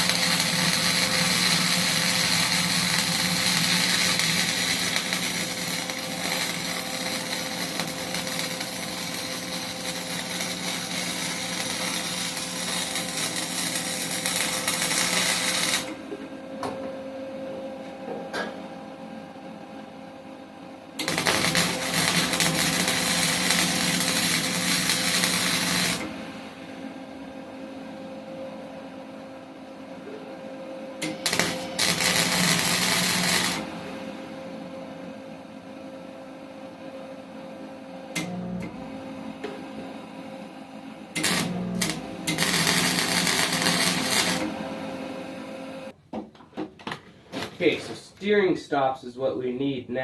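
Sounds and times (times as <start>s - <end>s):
welding arc crackle: 0.0s - 15.9s, 21.0s - 26.1s, 31.0s - 33.7s, 41.2s - 44.6s
welder electrical hum: 0.0s - 50.0s.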